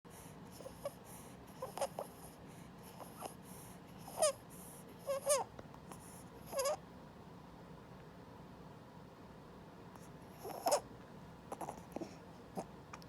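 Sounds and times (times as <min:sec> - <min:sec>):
infant squeaky breathing: 0:00.6 - 0:02.3, 0:02.9 - 0:03.4, 0:04.0 - 0:04.4, 0:05.0 - 0:06.8, 0:10.4 - 0:10.8, 0:11.5 - 0:12.7.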